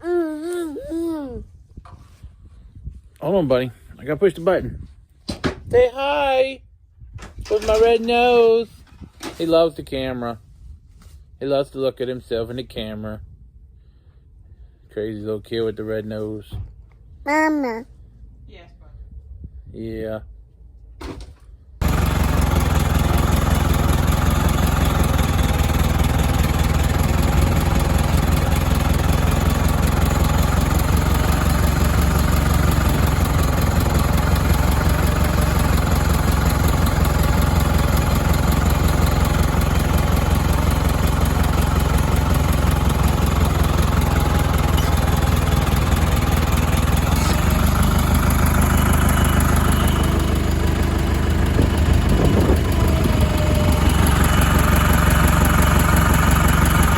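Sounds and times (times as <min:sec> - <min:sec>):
tractor diesel engine running: 0:21.8 - 0:56.9.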